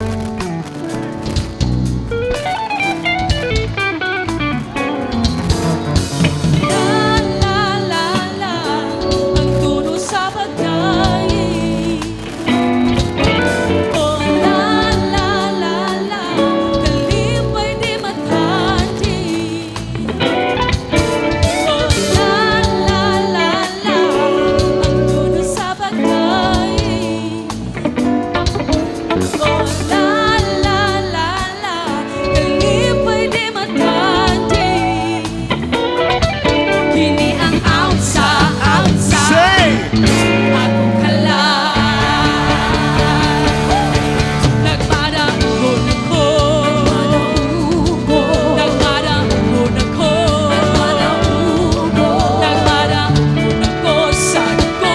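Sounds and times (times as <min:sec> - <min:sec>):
drum hits: 0:00.0 - 0:07.7, 0:41.7 - 0:46.3
bass notes: 0:00.0 - 0:15.6, 0:16.6 - 0:23.4, 0:24.4 - 0:25.6, 0:26.5 - 0:31.6, 0:32.2 - 0:33.3, 0:34.2 - 0:54.9
guitar: 0:00.0 - 0:54.9
person singing: 0:04.5 - 0:54.9.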